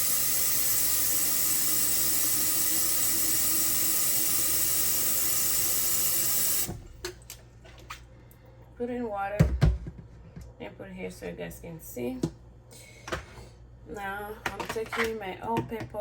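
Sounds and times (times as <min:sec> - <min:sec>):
tap water running into kettle: 0:00.0 - 0:07.0.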